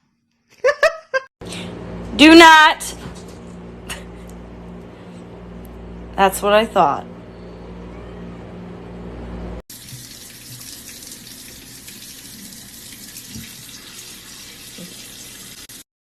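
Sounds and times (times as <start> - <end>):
steady low hum: 1.4 - 9.6
water running from a tap: 9.7 - 15.8.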